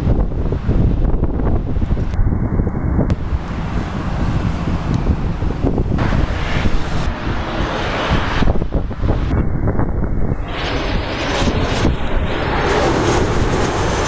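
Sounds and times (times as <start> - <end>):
jet engines rumbling: 0.0 - 14.0
wind buffeting microphone: 0.0 - 14.0
thin high whine: 3.1 - 14.0.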